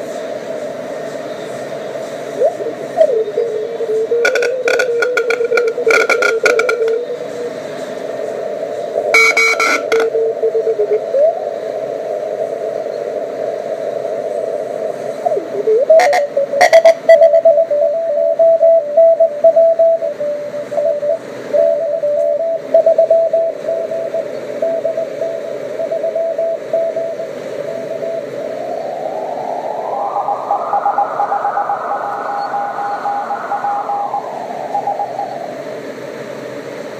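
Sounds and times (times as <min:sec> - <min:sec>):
radio band hiss: 0:00.0 - 0:36.9
static crackles: 0:00.0 - 0:36.9
morse tone keying: 0:04.1 - 0:07.4, 0:09.1 - 0:10.2, 0:16.0 - 0:28.3
radio whistle sliding in pitch: 0:09.2 - 0:10.0.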